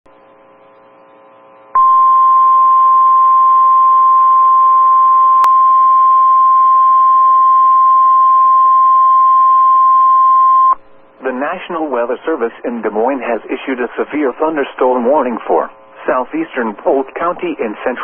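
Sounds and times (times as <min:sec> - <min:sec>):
loud steady alarm tone: 0:01.8 - 0:10.8
radio static hiss: 0:11.1 - 0:18.0.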